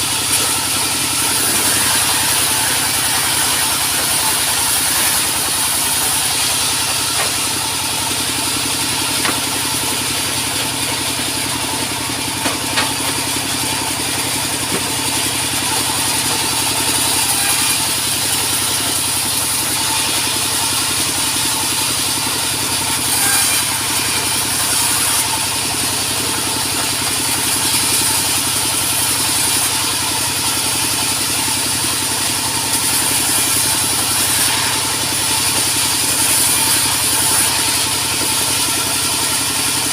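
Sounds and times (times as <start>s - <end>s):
sawmill machinery running: 0.0s - 39.9s.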